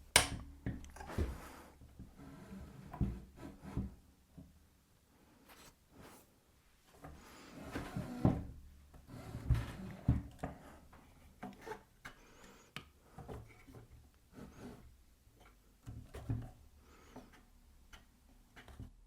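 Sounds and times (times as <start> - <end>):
wooden knocks and scraping: 7.0 - 12.2.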